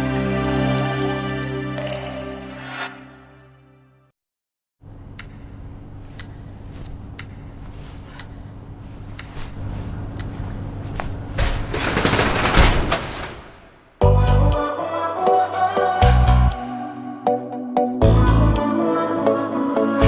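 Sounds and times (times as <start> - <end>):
loud rushing rattle: 11.4 - 13.9.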